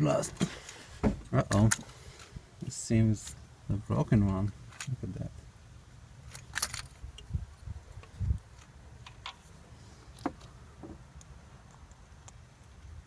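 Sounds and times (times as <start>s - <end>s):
small metallic clicks: 6.3s - 7.3s.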